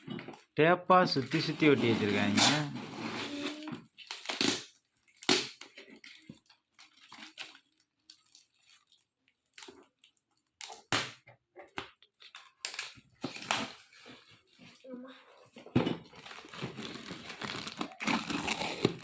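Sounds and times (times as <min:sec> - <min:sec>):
cardboard box being cut and torn: 0:01.7 - 0:04.6, 0:16.5 - 0:19.0
packing tape pulled off: 0:02.0 - 0:05.6, 0:16.2 - 0:19.0.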